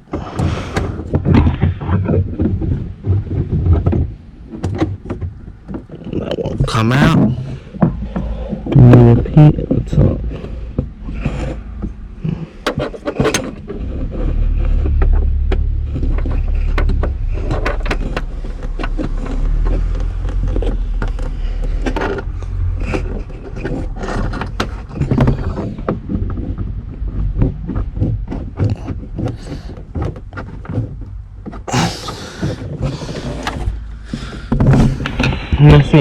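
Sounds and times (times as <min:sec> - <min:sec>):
steady low rumble: 0:00.0 - 0:36.0
plastic pegs clicking and scraping: 0:09.6 - 0:35.5.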